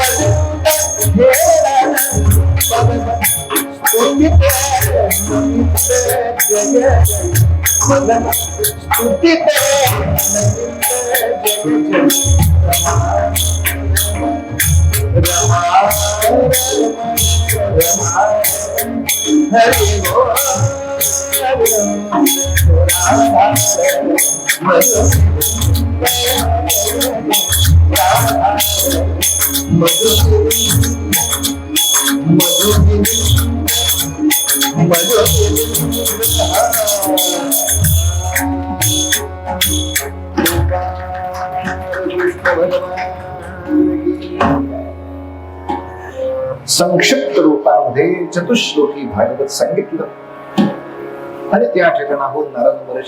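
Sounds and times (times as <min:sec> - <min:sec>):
metallic jingling strikes: 0:00.0 - 0:40.6
devotional melody: 0:00.0 - 0:53.0.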